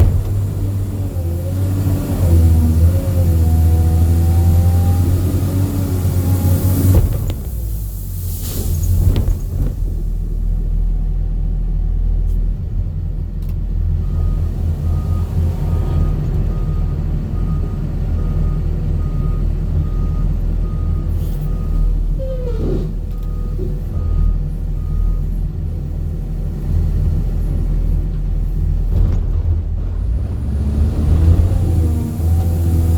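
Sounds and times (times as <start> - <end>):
heavy diesel machinery rumbling: 0.0 - 32.9
reversing alarm beeping: 14.0 - 25.4.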